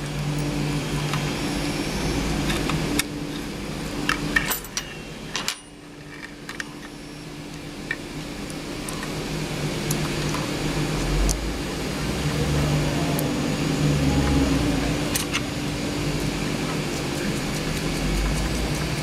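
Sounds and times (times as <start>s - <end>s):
steady low hum: 0.0s - 19.0s
tools clicking on metal parts: 2.4s - 7.0s, 15.1s - 15.5s.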